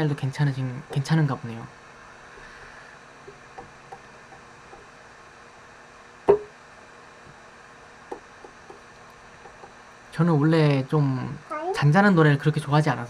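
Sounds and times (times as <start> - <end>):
sharp knock: 6.3 - 6.5.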